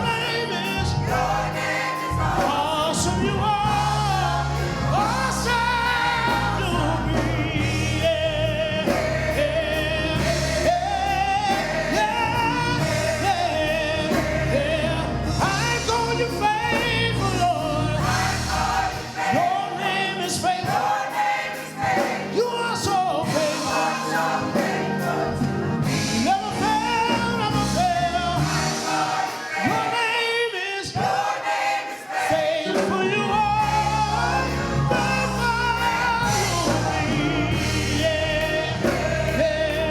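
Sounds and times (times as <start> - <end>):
gospel voices singing over band: 0.0 - 39.9
low bass: 2.2 - 18.9, 33.4 - 39.9.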